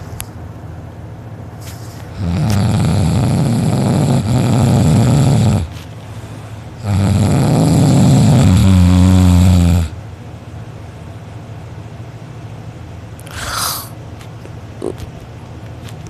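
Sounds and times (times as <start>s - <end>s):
person snoring loudly: 2.1s - 5.7s, 6.8s - 10.0s, 13.3s - 13.9s
quiet breathing: 5.6s - 6.8s, 13.2s - 14.0s.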